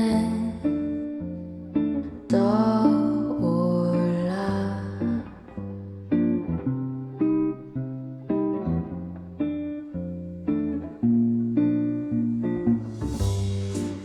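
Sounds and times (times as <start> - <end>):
acoustic guitar plucking chords: 11.2 - 14.0.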